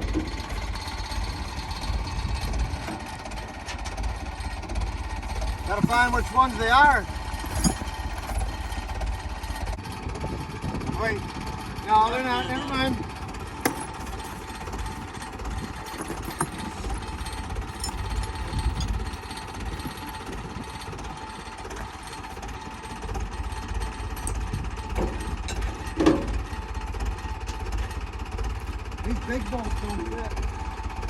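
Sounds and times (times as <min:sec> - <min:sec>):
engine idling with low knocking: 0:00.0 - 0:31.0.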